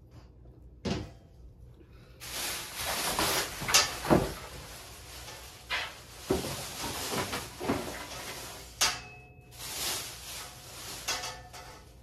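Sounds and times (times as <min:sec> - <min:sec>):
packaging rustling: 0:02.2 - 0:12.0
panels knocking and bumping: 0:03.2 - 0:04.6.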